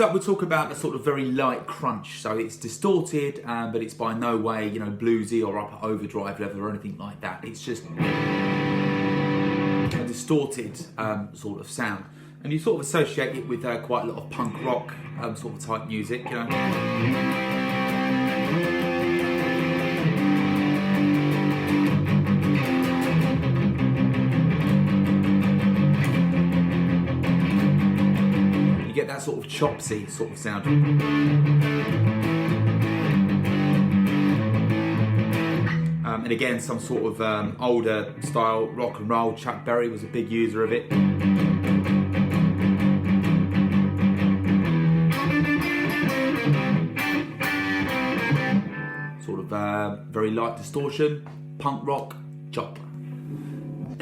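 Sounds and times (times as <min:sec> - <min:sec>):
electric guitar strumming chords: 0:07.9 - 0:10.3, 0:16.1 - 0:36.5, 0:40.8 - 0:49.2.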